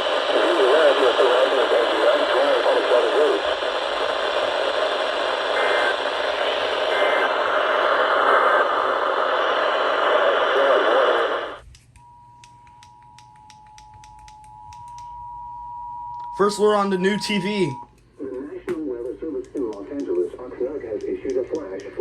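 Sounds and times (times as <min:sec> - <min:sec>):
radio static hiss: 0:00.0 - 0:11.6, 0:16.4 - 0:22.0.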